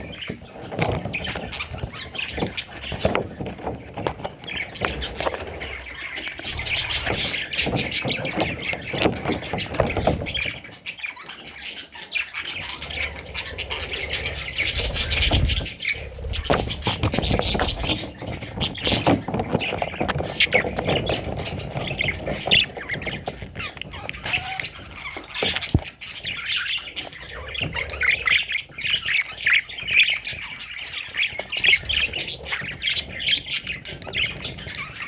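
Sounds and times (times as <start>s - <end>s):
budgerigars chattering and squawking: 0.0s - 35.0s.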